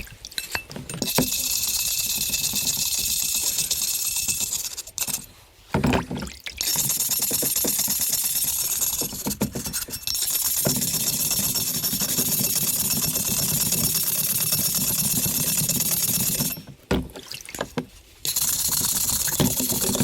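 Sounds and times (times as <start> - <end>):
small electric motor running: 1.2 - 5.2, 6.7 - 9.3, 10.2 - 16.5, 18.3 - 20.0.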